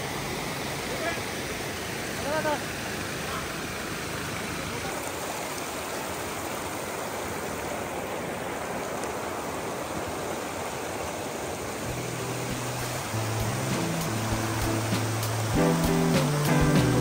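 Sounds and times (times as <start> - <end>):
waterfall rushing: 0.0 - 17.0
soft background music: 11.9 - 17.0.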